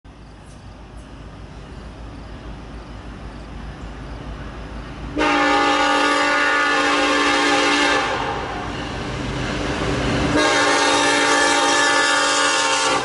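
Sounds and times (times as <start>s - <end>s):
diesel locomotive rumble: 0.1s - 13.0s
locomotive air horn: 5.2s - 8.6s, 10.3s - 13.0s.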